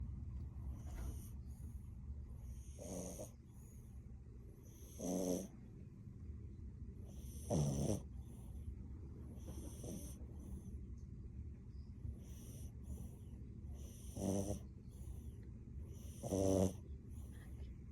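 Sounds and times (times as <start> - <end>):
dog snoring: 0.7 - 1.7, 2.4 - 3.8, 4.6 - 5.6, 7.0 - 8.7, 9.4 - 10.7, 12.2 - 15.3, 15.9 - 17.5.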